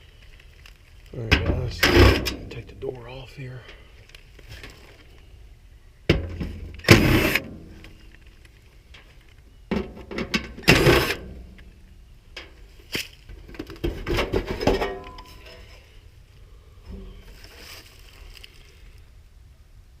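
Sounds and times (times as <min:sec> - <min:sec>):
sheet metal scraping and clanking: 0:09.8 - 0:11.4.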